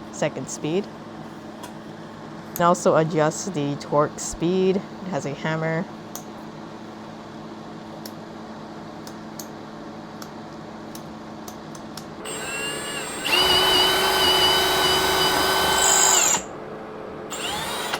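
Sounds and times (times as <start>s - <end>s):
cordless drill motor whining: 12.2s - 16.5s, 17.3s - 17.9s.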